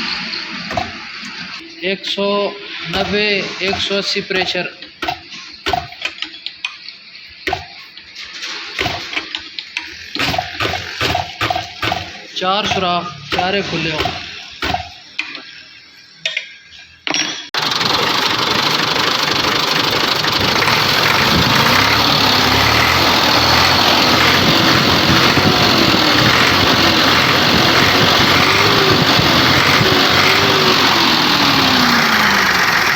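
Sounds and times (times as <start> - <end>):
tractor diesel engine idling: 17.6 - 32.9.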